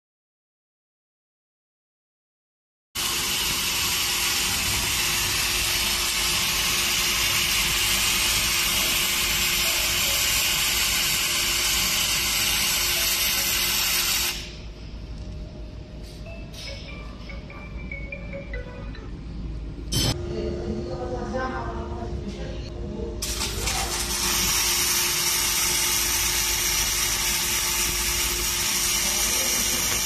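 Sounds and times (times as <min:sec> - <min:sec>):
welding arc hissing: 0:03.0 - 0:14.6, 0:23.2 - 0:30.0.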